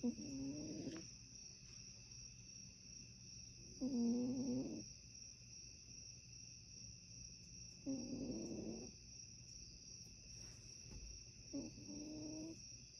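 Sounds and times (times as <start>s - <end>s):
cat snoring: 0.0s - 1.0s, 3.8s - 4.8s, 7.8s - 9.0s, 11.5s - 12.6s.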